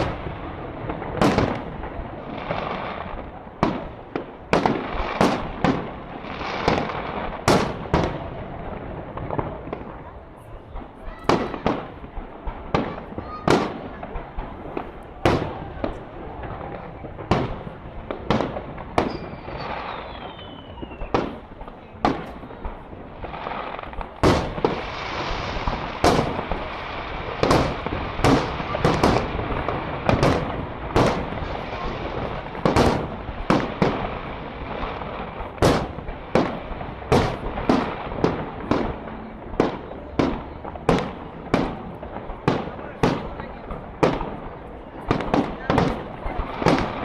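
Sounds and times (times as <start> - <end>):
crackling hiss: 0.0 - 47.0
firework whistle falling in pitch: 19.1 - 21.1.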